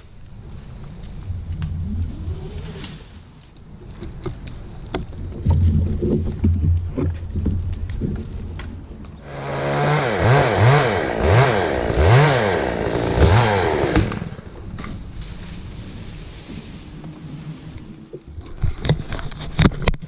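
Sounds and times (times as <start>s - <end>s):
chainsaw revving: 9.2s - 14.4s.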